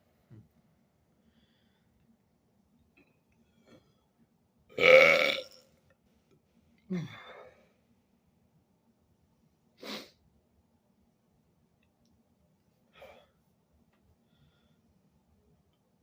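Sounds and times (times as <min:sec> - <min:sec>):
man burping loudly: 0:04.8 - 0:05.6.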